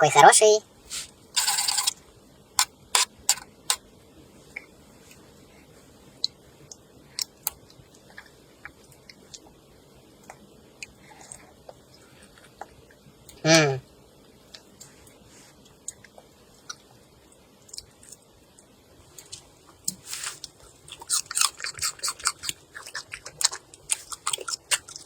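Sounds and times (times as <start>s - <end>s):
short scrape: 0.9s - 1.9s, 3.0s - 3.8s.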